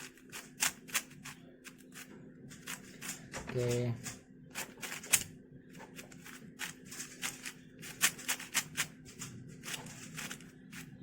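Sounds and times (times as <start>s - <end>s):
puzzle cube plastic clicks: 6.0s - 10.9s.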